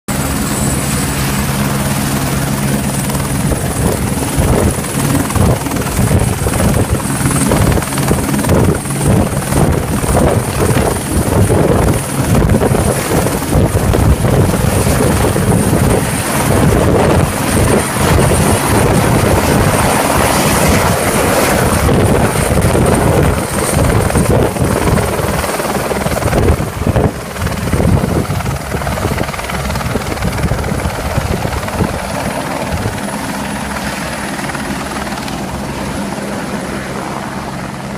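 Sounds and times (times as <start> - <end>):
helicopter rotor beating: 0.1 - 37.9.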